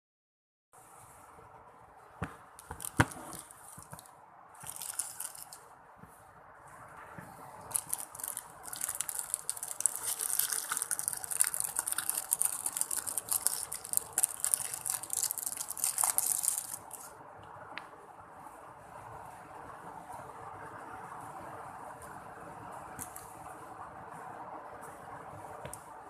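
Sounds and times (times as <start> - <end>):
slime squeezed wet crackling: 7.7 - 17.1.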